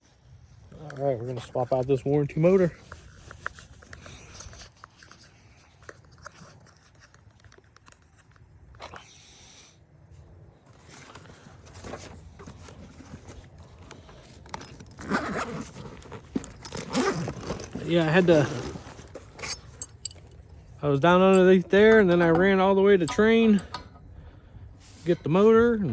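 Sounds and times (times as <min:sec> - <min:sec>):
tools clicking and rattling: 0:10.8 - 0:24.0
person speaking: 0:16.9 - 0:19.1.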